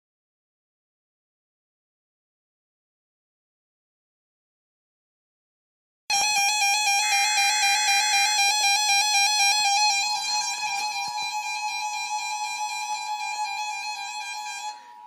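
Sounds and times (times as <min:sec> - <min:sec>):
buzzy electronic tone pulsing: 0:06.1 - 0:15.0.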